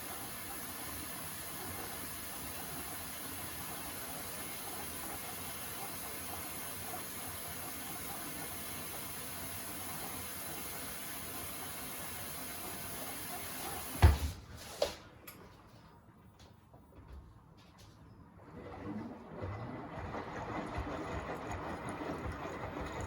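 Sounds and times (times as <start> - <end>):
washing machine filling with water: 0.0 - 14.4, 18.4 - 23.0
loud thump: 14.0 - 14.4.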